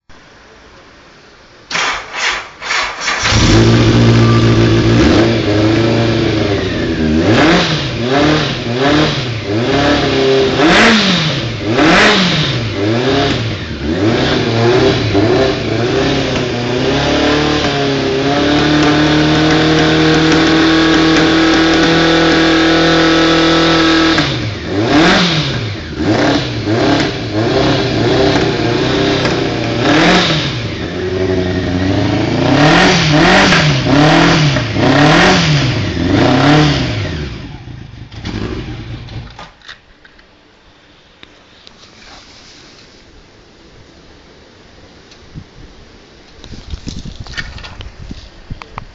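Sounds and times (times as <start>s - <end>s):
motorcycle engine revving: 1.7s - 39.4s.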